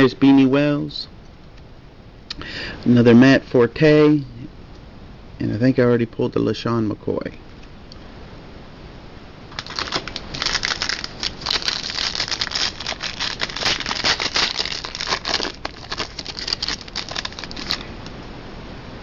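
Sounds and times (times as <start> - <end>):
foil wrapper crinkling: 9.5 - 18.1.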